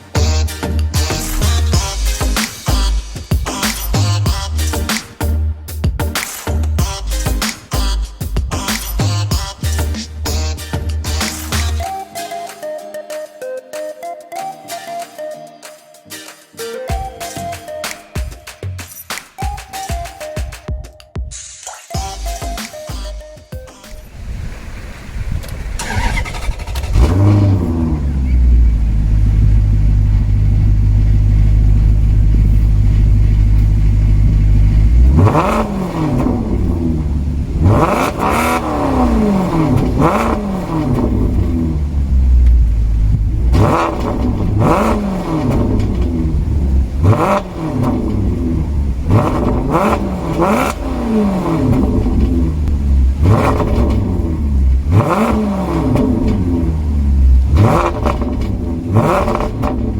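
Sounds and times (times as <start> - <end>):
car engine idling and revving: 24.5 - 59.9.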